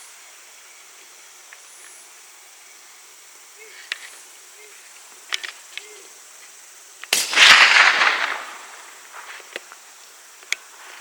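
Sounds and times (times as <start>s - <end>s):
rifle shot: 7.1s - 9.2s.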